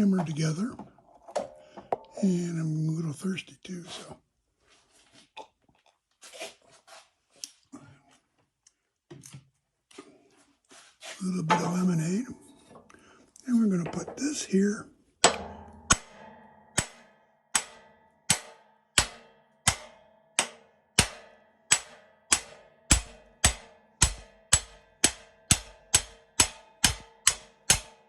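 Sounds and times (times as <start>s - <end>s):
hammer striking metal bolt: 15.2s - 28.0s.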